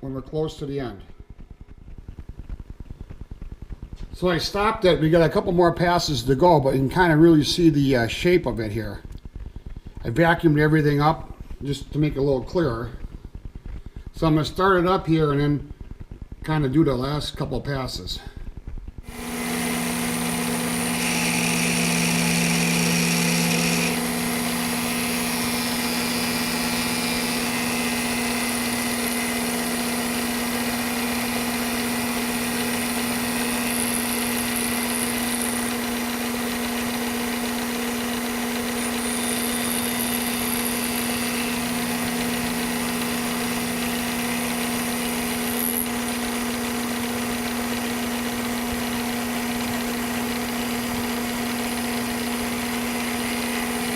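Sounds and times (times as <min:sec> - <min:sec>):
milling cutter cutting metal: 0:19.0 - 0:53.9
milling machine motor hum: 0:19.0 - 0:53.9.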